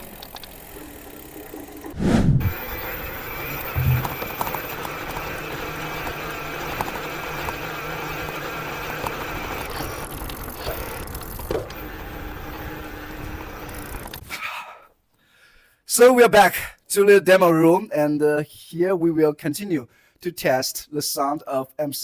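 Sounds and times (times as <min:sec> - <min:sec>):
bike clicks and rattles: 0:00.0 - 0:01.9, 0:02.5 - 0:14.3
electric bike motor whirring: 0:00.0 - 0:14.3
tyre and ride noise: 0:02.4 - 0:14.2.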